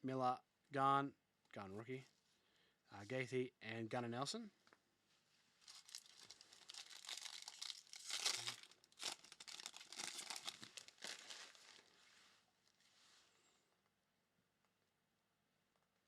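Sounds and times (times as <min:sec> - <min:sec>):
foil wrapper crinkling: 0:05.6 - 0:11.9.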